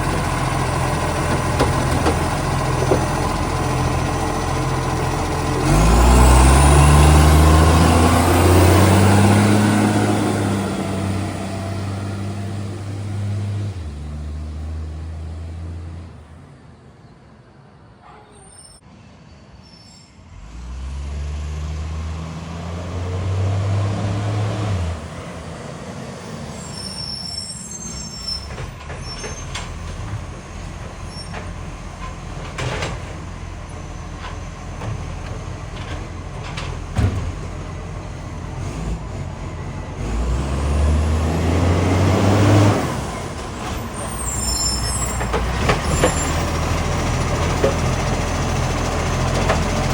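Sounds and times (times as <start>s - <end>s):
truck diesel engine revving: 0.0s - 16.1s, 20.3s - 26.6s, 29.5s - 49.9s
clicks and knocks: 0.1s - 3.9s.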